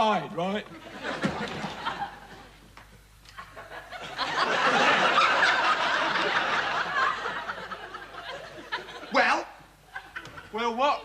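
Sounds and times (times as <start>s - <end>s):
studio audience laughing: 0.7s - 2.5s, 3.3s - 9.2s.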